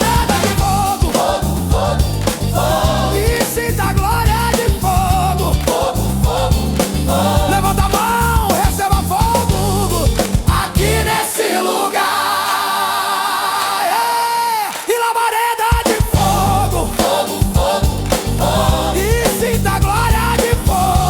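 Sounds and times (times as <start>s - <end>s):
bass line: 0.0s - 11.2s, 16.0s - 21.0s
drums: 0.0s - 11.2s, 15.6s - 21.0s.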